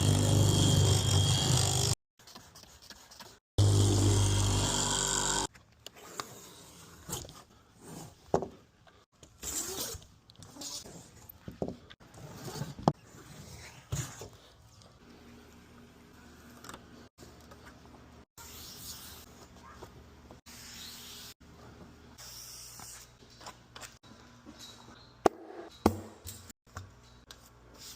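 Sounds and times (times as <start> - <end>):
loud motor hum: 0.0 - 2.0, 3.6 - 5.5.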